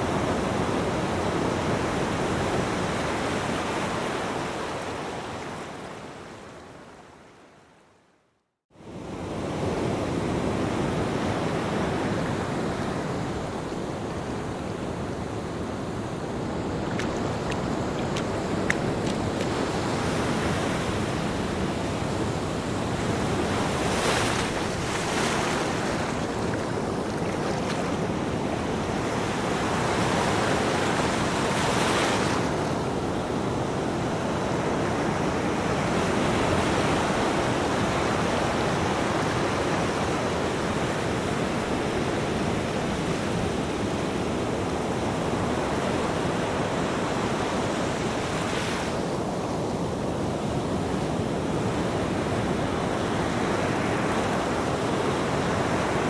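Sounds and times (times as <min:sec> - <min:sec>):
ocean waves breaking: 0:09.4 - 0:41.8.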